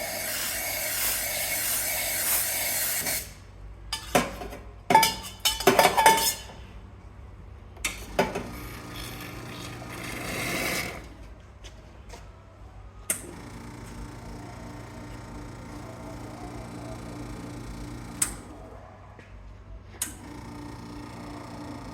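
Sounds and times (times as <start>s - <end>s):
espresso machine hissing: 0.0s - 3.4s, 8.4s - 11.1s, 13.3s - 18.2s.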